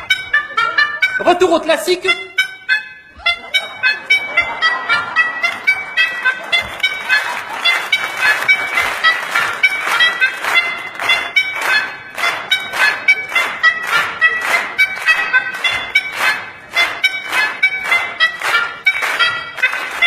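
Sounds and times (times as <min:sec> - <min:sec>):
car horns honking a melody: 0:00.0 - 0:20.0.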